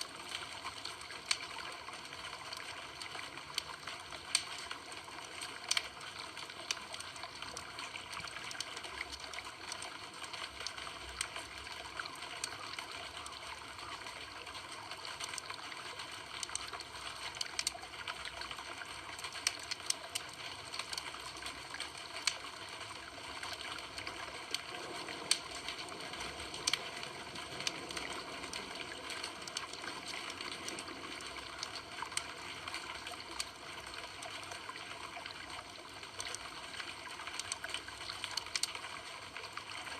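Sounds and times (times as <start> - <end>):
campfire crackling and popping: 0.0 - 38.9
steady fire hiss: 13.9 - 38.9.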